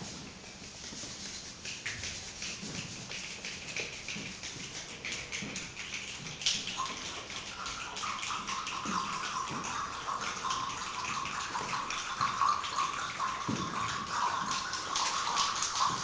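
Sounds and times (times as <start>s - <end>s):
hands making rain sounds: 0.0s - 16.0s.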